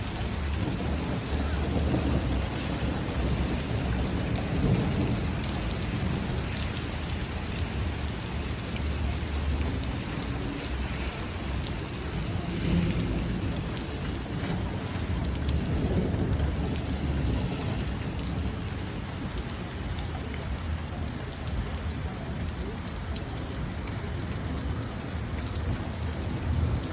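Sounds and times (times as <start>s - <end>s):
hailstones ticking: 0.0s - 26.9s.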